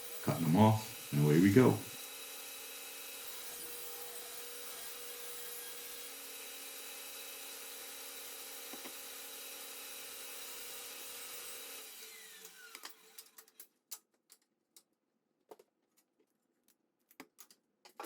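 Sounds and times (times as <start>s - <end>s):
power saw whining: 0.0s - 13.6s.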